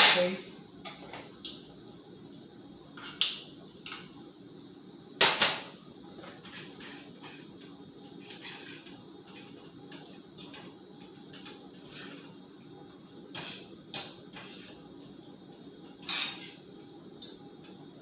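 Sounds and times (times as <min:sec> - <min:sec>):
metal utensils clinking on cookware: 0:16.0 - 0:16.6.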